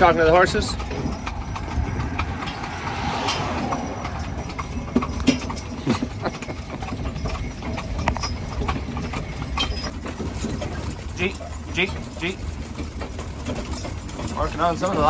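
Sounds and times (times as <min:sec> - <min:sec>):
horse hooves clip-clopping: 0:00.0 - 0:15.0
wagon low rumble: 0:00.0 - 0:15.0.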